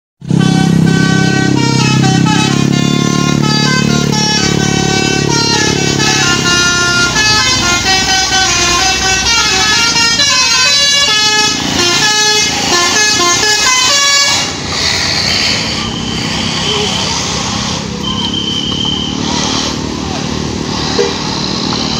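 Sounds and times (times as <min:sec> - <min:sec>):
musical air horn melody: 0:00.2 - 0:17.3.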